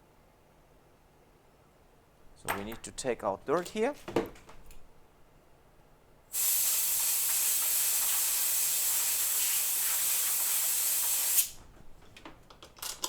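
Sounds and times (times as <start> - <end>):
air jet hissing from nozzle: 6.3 - 11.6.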